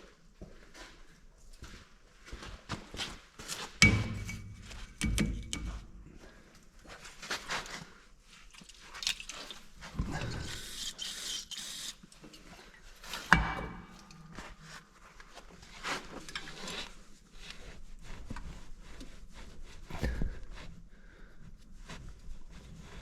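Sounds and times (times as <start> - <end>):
knocks and scraping: 13.0 - 14.8, 19.8 - 20.6.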